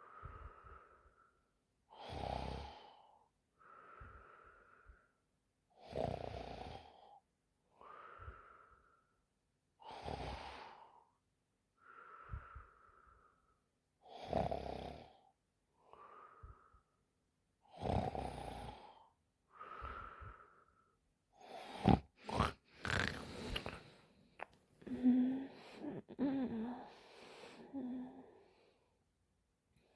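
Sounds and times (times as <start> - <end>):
woman snoring: 17.7 - 18.9, 21.4 - 24.0, 24.8 - 28.6.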